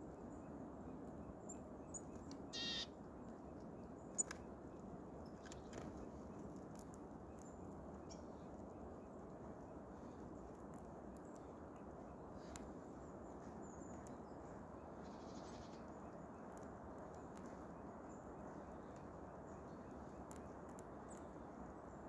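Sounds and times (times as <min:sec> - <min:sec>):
faint outdoor hiss: 0:00.0 - 0:22.0
small sharp clicks: 0:04.1 - 0:04.5, 0:12.4 - 0:12.7, 0:16.5 - 0:17.6, 0:19.9 - 0:21.3.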